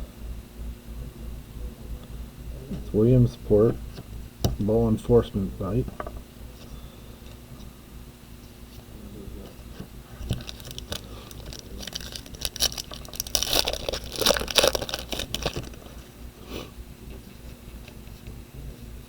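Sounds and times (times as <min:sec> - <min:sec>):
foil wrapper tearing and crinkling: 0:10.3 - 0:15.8.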